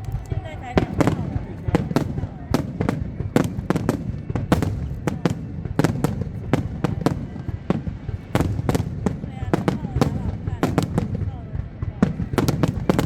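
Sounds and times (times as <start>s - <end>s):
fireworks bangs and crackles: 0.0s - 13.0s.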